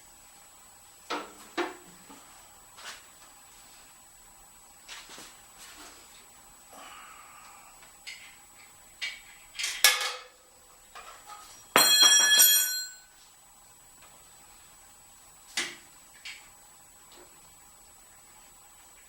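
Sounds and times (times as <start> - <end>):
metal tools clinking: 11.7 - 13.1.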